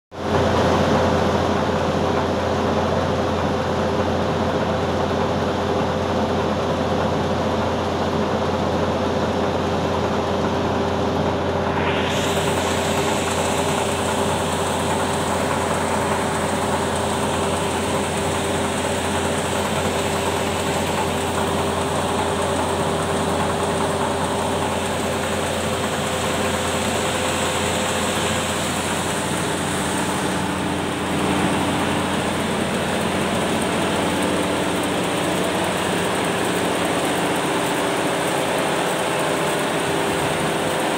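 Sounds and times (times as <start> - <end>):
diesel engine drone: 0.1 - 40.9
high hiss: 11.5 - 21.4.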